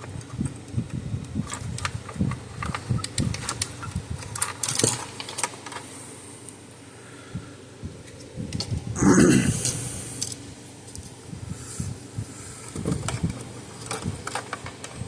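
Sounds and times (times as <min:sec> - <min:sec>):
small parts and hand tools clicking: 0:00.0 - 0:05.9, 0:12.6 - 0:15.0.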